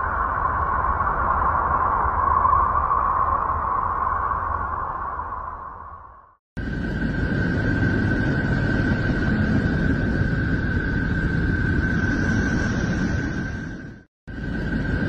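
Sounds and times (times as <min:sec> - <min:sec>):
steady rushing noise: 0:06.6 - 0:15.0.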